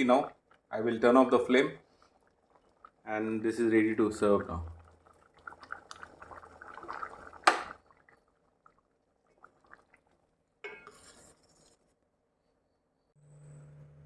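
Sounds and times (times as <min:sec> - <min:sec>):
pot and utensils clattering: 0:10.6 - 0:11.4.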